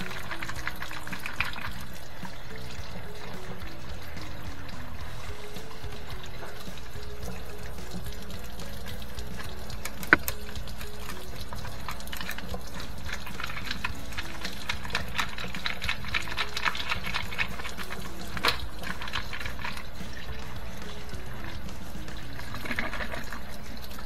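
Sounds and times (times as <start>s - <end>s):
water pouring and splashing: 0.0s - 24.0s
small splashy clicks: 6.6s - 20.2s.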